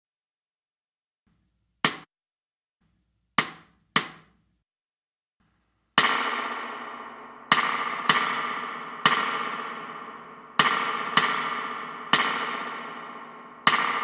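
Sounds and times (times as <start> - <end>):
dry snare-like drum hits: 1.8 - 2.1, 3.4 - 4.4, 6.0 - 14.0
spring reverb tail: 6.0 - 14.0.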